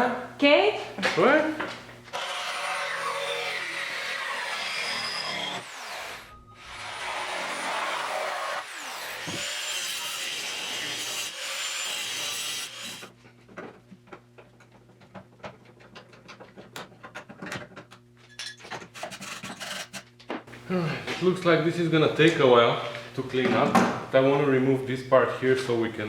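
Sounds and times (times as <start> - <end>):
power cutting tool cutting steel: 2.1 - 13.1
metal clicks and scrapes: 18.5 - 20.1.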